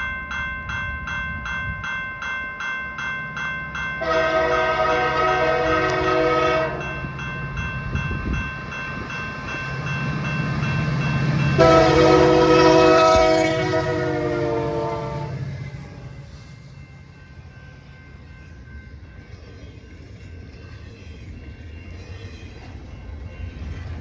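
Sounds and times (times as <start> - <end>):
train horn chord: 4.0 - 6.9, 11.6 - 15.5
locomotive engines rumbling: 4.0 - 16.3.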